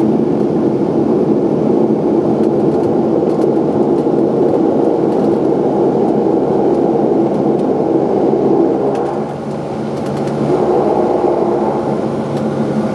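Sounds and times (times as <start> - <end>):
turboprop engines droning: 0.0 - 12.9.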